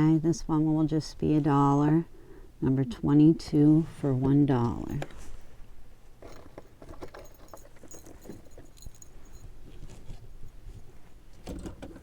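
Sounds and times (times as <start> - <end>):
metal brooches clicking and jingling: 7.1 - 9.6.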